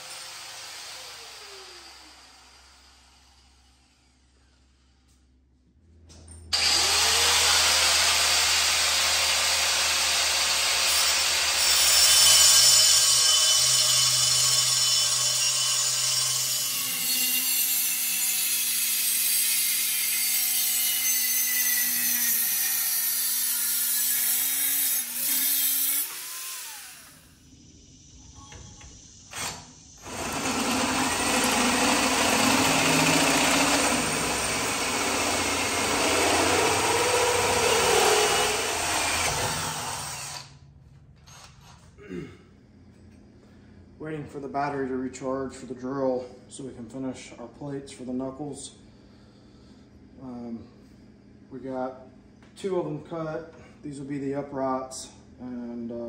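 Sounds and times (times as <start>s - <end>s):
power tools cutting steel: 0.0s - 3.9s, 6.5s - 27.5s, 29.3s - 40.6s.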